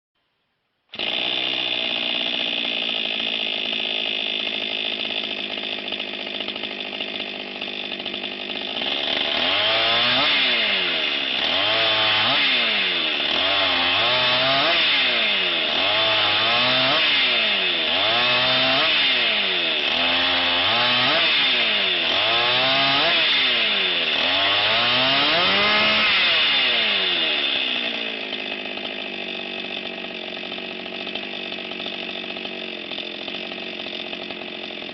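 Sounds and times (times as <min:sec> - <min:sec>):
chainsaw cutting firewood: 0:00.9 - 0:34.9
chainsaw idling and revving: 0:00.9 - 0:34.9.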